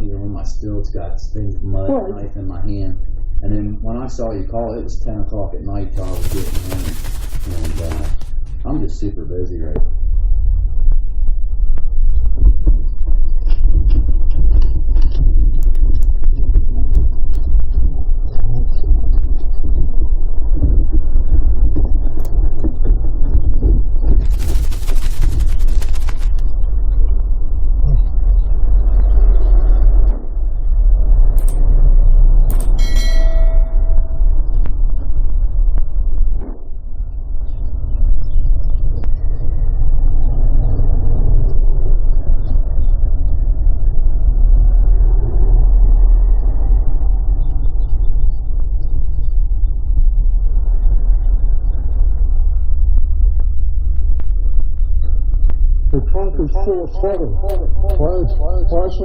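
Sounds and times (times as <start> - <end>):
crackling hiss: 5.9 - 8.6
wind thuds on microphone: 9.6 - 56.0.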